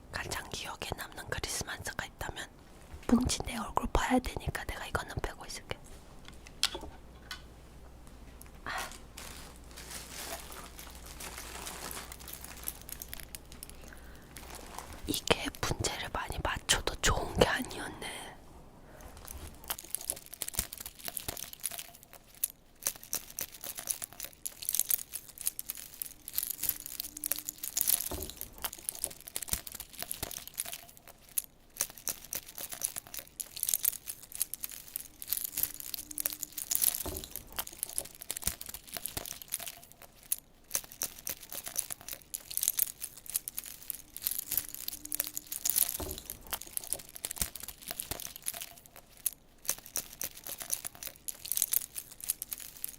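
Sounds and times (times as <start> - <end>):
packaging crinkling and tearing: 8.4 - 16.6, 19.1 - 52.9.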